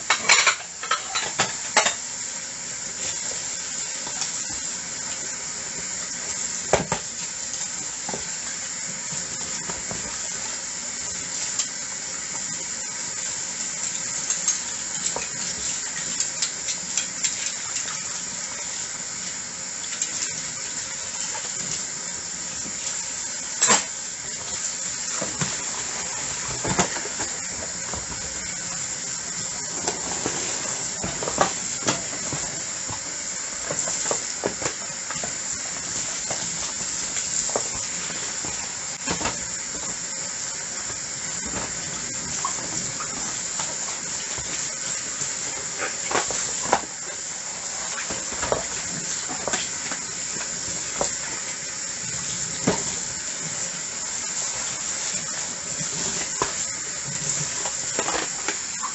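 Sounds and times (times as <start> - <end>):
dishes clinking: 0.0 - 2.0
running tap water: 0.0 - 58.9.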